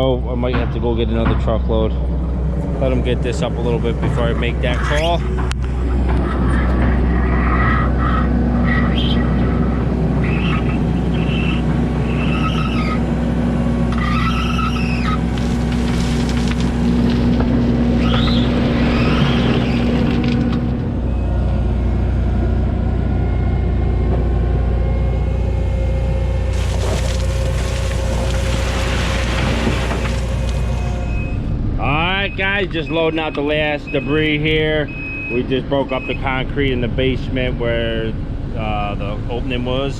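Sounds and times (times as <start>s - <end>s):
diesel heavy equipment running: 0.0s - 39.9s
high wavering metallic squeals: 6.4s - 13.2s, 13.9s - 15.2s.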